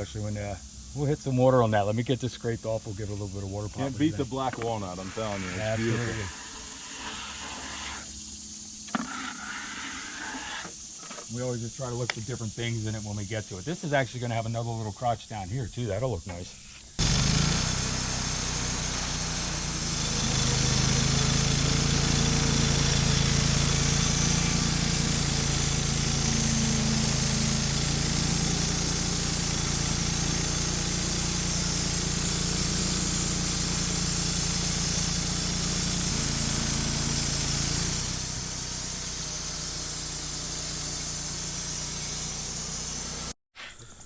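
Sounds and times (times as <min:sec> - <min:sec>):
band saw blade hissing: 0:04.0 - 0:11.4, 0:16.5 - 0:43.8
sawmill engine: 0:17.0 - 0:43.4.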